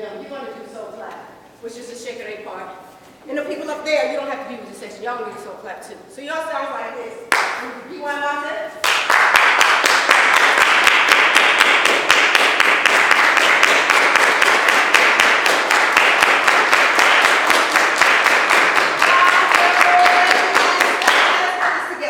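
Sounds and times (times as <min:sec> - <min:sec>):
audience clapping in rhythm: 0:07.3 - 0:07.6, 0:08.8 - 0:22.0.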